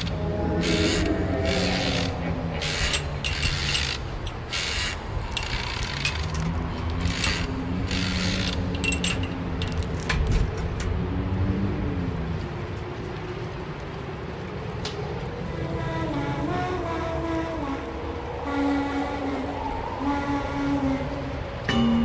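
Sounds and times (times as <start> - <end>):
hissing swells: 0.0 - 5.3
low wavering drone: 0.0 - 22.0
mechanical clanking and rattling: 5.2 - 11.0.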